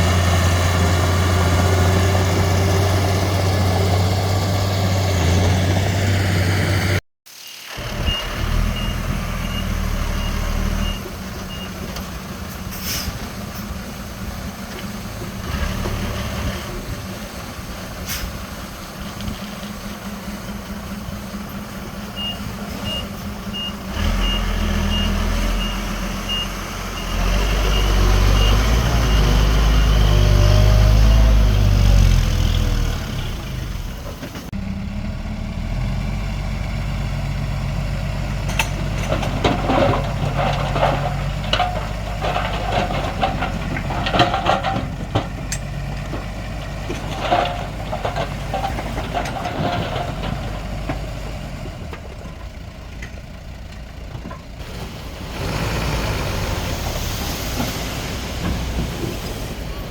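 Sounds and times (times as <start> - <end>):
bulldozer engine running hard: 0.0 - 7.0, 13.3 - 59.9
truck reversing beeper: 7.3 - 11.9, 22.0 - 32.1
metallic clanks and rattles: 38.4 - 51.2.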